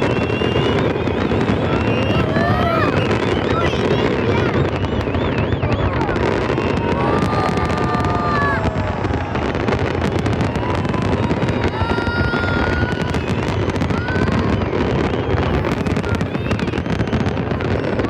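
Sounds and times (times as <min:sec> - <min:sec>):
firework whistling: 0:00.0 - 0:18.0
fireworks bangs and crackling: 0:00.0 - 0:18.0.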